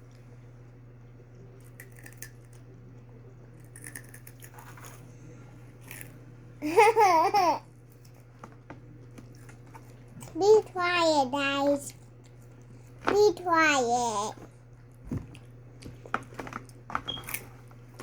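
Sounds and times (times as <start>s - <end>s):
crunchy chewing of snack: 1.3s - 2.8s, 3.5s - 6.2s, 7.8s - 10.4s
child's high voice: 10.4s - 11.9s, 13.1s - 14.4s.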